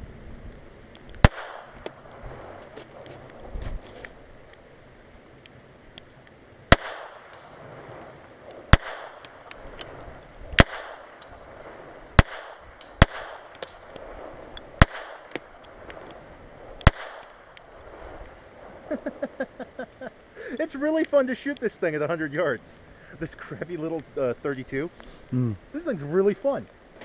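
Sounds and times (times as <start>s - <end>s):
pistol shots with echo: 1.2s - 2.0s, 6.7s - 7.5s, 8.7s - 9.5s, 10.6s - 11.4s, 12.2s - 13.7s, 14.8s - 15.5s, 16.8s - 17.4s.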